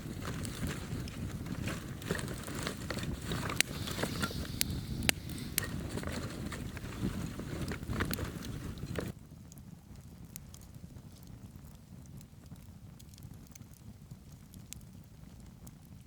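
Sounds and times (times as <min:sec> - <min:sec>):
sharp pops from fire: 0:00.0 - 0:09.2
campfire crackling: 0:00.0 - 0:16.0
low rumble of burning fire: 0:00.0 - 0:16.0.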